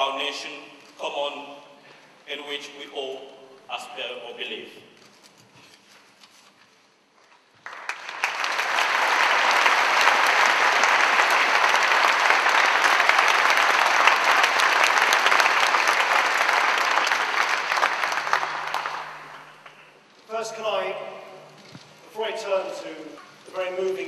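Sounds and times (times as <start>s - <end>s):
large audience applauding: 7.5s - 20.0s.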